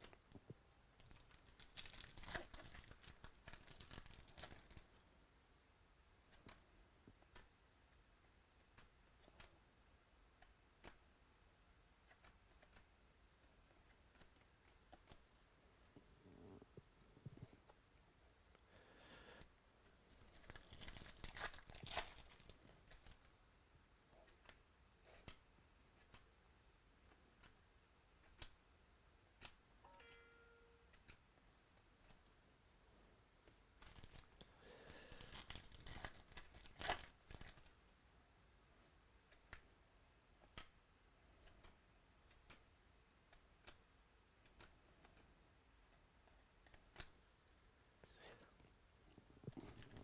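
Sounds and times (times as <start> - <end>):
foil wrappers tearing and crinkling: 1.0 - 4.8, 20.2 - 23.2, 35.0 - 37.7
cards clicking and snapping: 24.2 - 25.4, 40.4 - 40.8, 41.4 - 42.7, 46.5 - 47.2.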